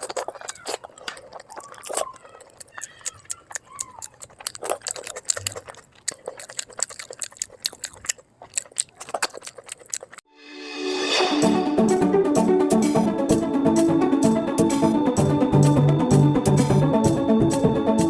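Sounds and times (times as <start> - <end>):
high mouth sounds: 0.0 - 10.2
chewing and crunching: 0.0 - 10.3.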